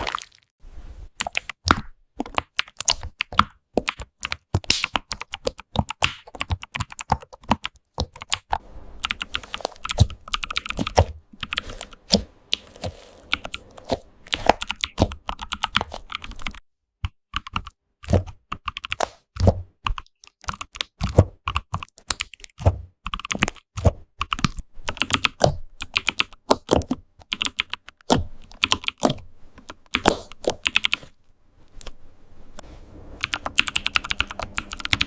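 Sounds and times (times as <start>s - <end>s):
computer keyboard typing: 1.2s - 1.6s, 2.2s - 17.8s, 18.5s - 19.0s, 19.8s - 31.2s, 33.2s - 35.0s.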